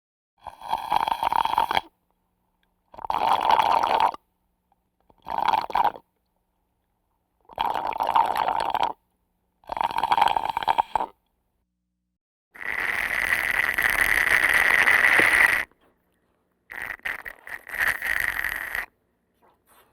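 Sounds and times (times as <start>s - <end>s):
slurping through a straw: 0.4s - 1.9s, 2.9s - 4.2s, 5.1s - 6.1s, 7.5s - 9.0s, 9.6s - 11.2s, 12.6s - 15.8s, 16.7s - 19.0s.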